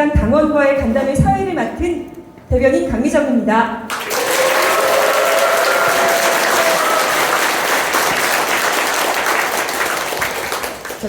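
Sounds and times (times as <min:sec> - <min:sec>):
audience applauding: 0:03.9 - 0:11.0.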